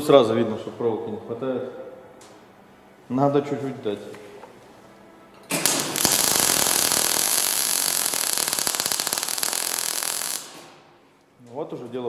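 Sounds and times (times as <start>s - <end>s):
welding arc crackling: 5.5s - 10.9s.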